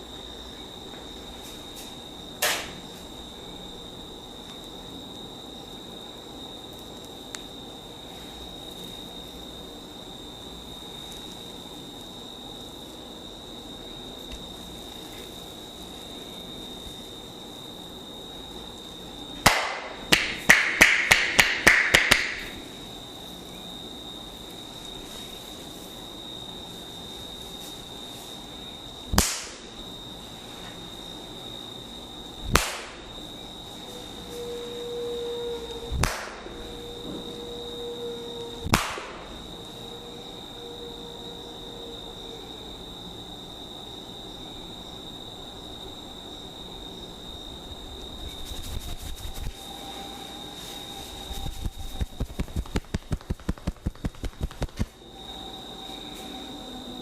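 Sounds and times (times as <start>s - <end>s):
steady high-pitched whine: 0.0s - 57.0s
sharp massage smacks: 19.4s - 22.5s, 29.1s - 29.6s, 32.5s - 33.0s, 36.0s - 36.4s, 38.6s - 39.2s, 51.7s - 55.0s.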